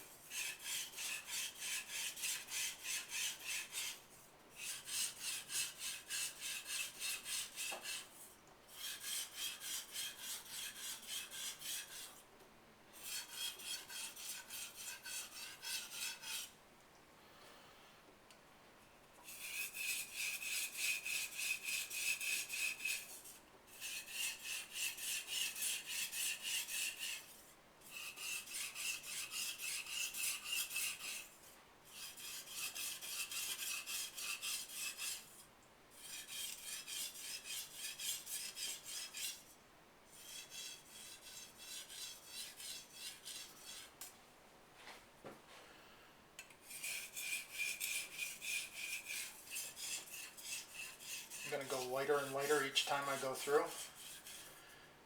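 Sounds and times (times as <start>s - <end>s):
knife scraping on whetstone: 0.3s - 4.0s, 4.6s - 12.2s, 13.0s - 16.5s, 19.3s - 35.4s, 36.0s - 39.5s, 40.1s - 44.0s, 46.6s - 54.8s.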